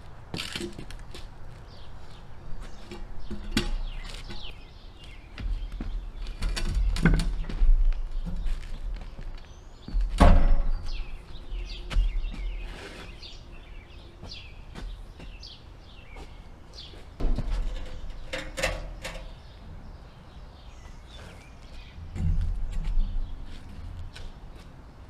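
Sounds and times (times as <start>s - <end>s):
songbirds chirping: 0.0s - 25.0s
sharp knocks and thumps: 2.6s - 9.1s, 9.9s - 11.1s, 17.2s - 19.6s, 22.0s - 23.9s.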